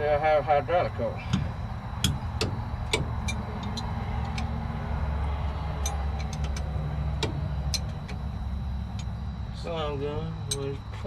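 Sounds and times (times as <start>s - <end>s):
engine idling: 0.0s - 11.0s
wrench clicks and taps: 5.8s - 8.2s.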